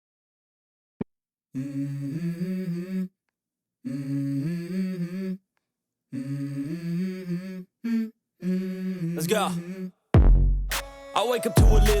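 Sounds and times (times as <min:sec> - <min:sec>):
person humming with sliding pitch: 0:01.6 - 0:03.1, 0:03.9 - 0:05.4, 0:06.2 - 0:09.9.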